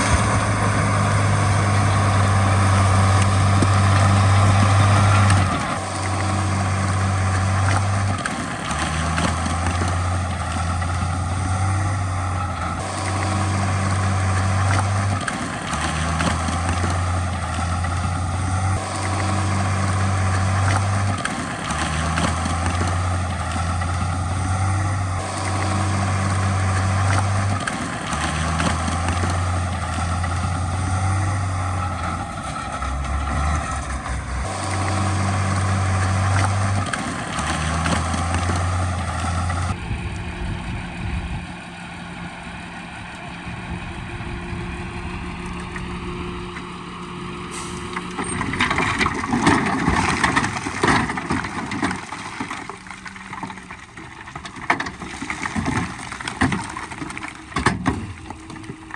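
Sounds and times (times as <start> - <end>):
heavy diesel machinery engine: 0.0 - 58.9
clattering noise: 47.5 - 58.9.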